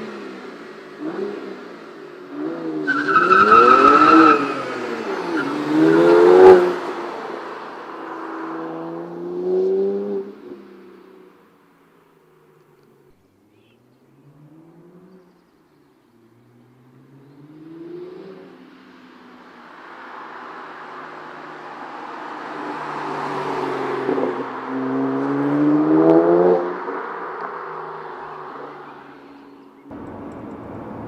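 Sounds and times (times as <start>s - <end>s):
car engine accelerating through gears: 0.0s - 7.2s, 22.4s - 29.0s, 29.9s - 31.0s.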